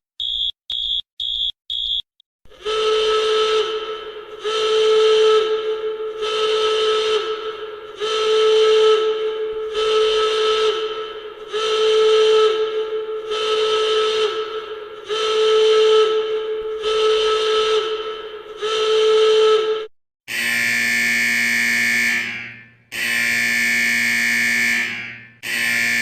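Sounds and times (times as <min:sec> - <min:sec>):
alarm horn blasts: 0:02.5 - 0:26.0
electric alarm buzzer: 0:20.3 - 0:26.0.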